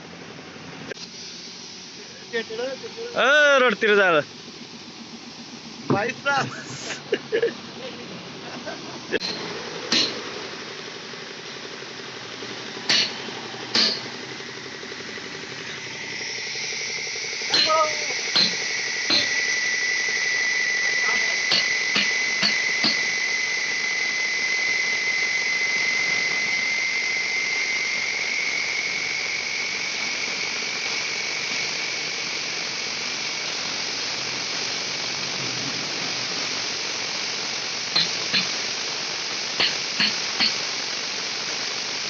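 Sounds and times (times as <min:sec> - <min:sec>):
steady hiss: 0:00.0 - 0:42.0
sharp knocks: 0:09.2 - 0:10.3, 0:12.9 - 0:14.1, 0:17.5 - 0:19.4.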